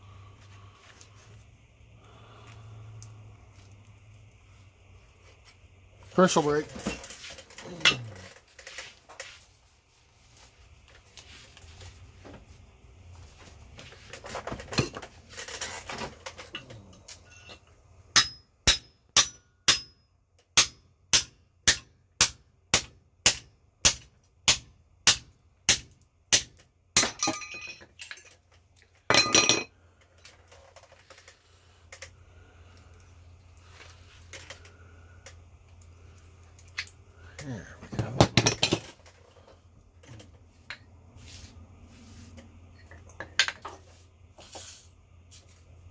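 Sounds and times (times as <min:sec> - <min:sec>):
parts clattering: 0:06.2 - 0:09.5, 0:13.4 - 0:18.8, 0:27.0 - 0:32.2, 0:32.8 - 0:41.3, 0:42.1 - 0:45.8
hammer striking metal: 0:18.1 - 0:20.0, 0:20.6 - 0:27.7.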